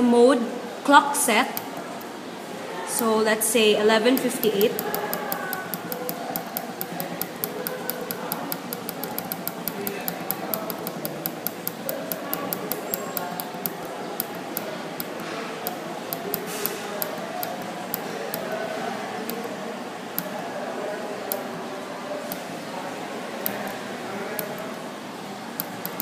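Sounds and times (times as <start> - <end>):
murmur of voices: 0.0 - 26.0
sharp light clicks: 1.5 - 2.1, 4.1 - 19.6, 21.2 - 21.5, 23.4 - 24.8, 25.6 - 26.0.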